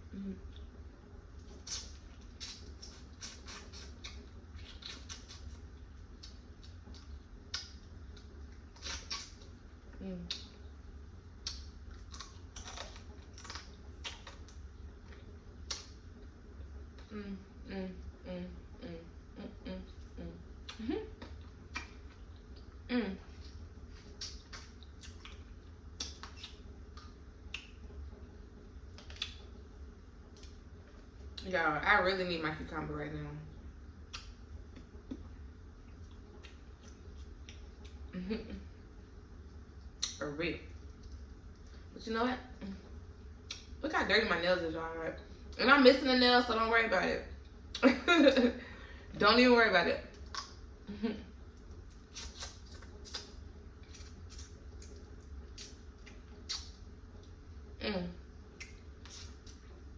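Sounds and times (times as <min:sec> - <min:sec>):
steady low hum: 0:00.0 - 0:59.9
person chewing wet smacking: 0:01.4 - 0:09.6, 0:11.4 - 0:16.0, 0:20.6 - 0:22.8, 0:23.4 - 0:27.9, 0:28.9 - 0:29.6, 0:34.1 - 0:38.1, 0:50.1 - 0:50.7, 0:51.5 - 0:57.4, 0:58.5 - 0:59.7
wet mouth sounds: 0:01.6 - 0:05.6, 0:26.0 - 0:27.8, 0:50.2 - 0:50.6, 0:55.6 - 0:56.7.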